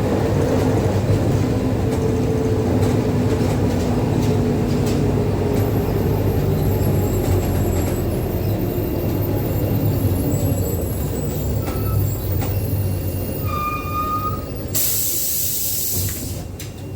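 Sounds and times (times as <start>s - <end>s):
diesel engine rumbling: 0.0s - 16.9s
high squeal: 6.5s - 15.0s.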